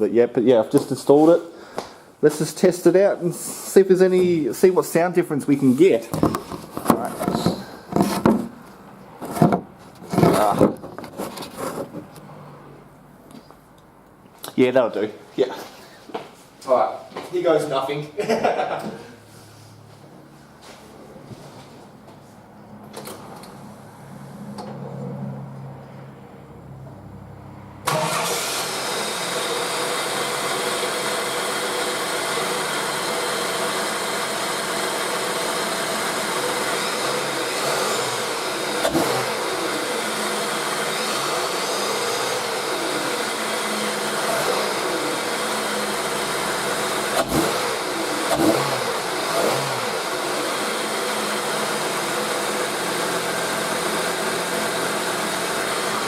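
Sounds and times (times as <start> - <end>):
car engine idling and revving: 22.5 - 56.0.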